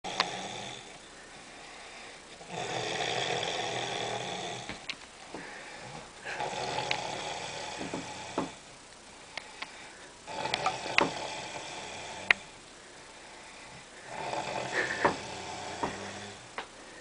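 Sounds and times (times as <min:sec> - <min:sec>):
man snoring: 0:00.0 - 0:01.0, 0:02.4 - 0:04.8, 0:05.8 - 0:08.6, 0:10.2 - 0:12.6, 0:14.0 - 0:16.5.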